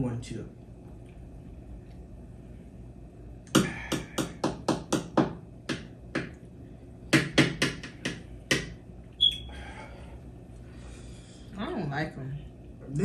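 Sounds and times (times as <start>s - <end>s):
sharp knocks: 3.5s - 6.4s, 7.1s - 8.8s.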